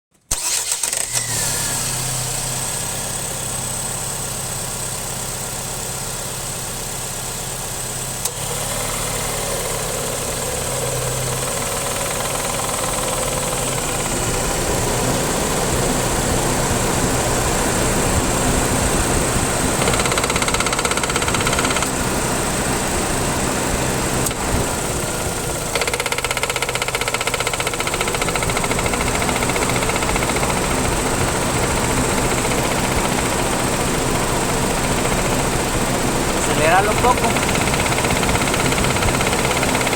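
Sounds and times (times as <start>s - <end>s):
car engine idling: 8.8s - 39.9s
compressor rattle: 19.2s - 22.1s, 24.2s - 39.9s.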